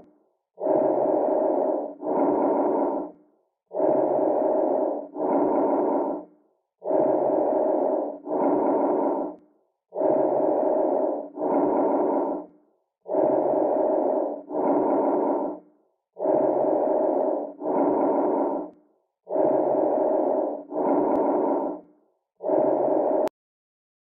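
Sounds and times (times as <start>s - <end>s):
breathing through a stethoscope: 0.0s - 23.3s.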